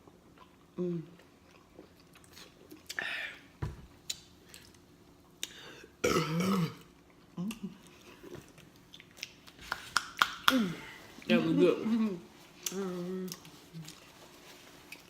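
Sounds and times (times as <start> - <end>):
wet chewing and smacking: 7.0 - 10.6.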